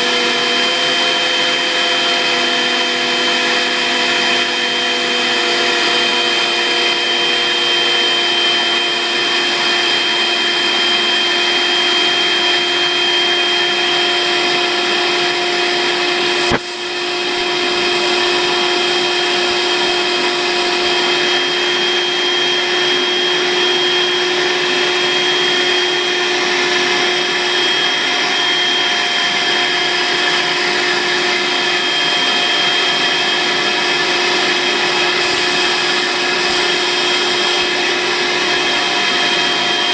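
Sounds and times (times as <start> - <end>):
stick vacuum motor whine: 0.0 - 39.9
sharp click: 16.5 - 16.7.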